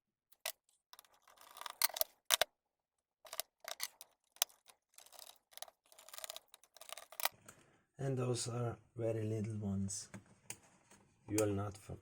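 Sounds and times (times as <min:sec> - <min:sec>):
screws and screwdriver clicking: 0:00.4 - 0:02.5, 0:03.3 - 0:07.3.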